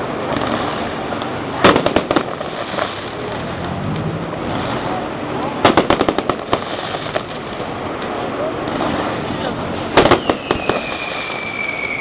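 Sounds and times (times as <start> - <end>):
fireworks crackling bangs: 0.0 - 12.0.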